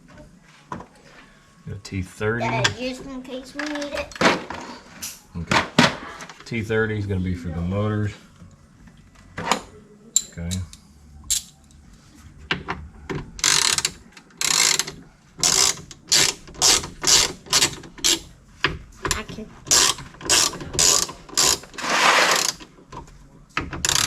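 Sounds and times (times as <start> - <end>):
hand ratchet clicking: 13.4 - 18.2, 19.7 - 22.7.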